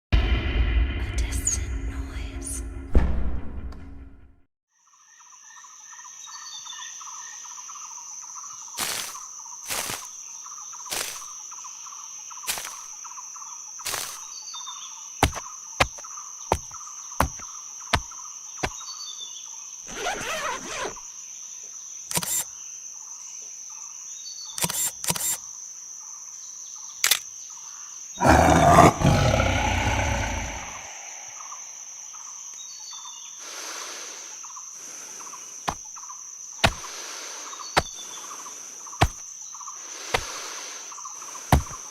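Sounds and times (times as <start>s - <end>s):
loud burst with deep rumble: 0.1s - 4.4s
high insect drone: 5.1s - 41.9s
birdsong: 34.1s - 41.9s.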